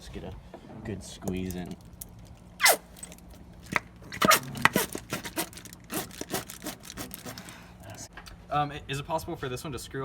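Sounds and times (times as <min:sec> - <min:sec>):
squeeze bottle squirting: 0:02.6 - 0:02.9, 0:04.1 - 0:07.5.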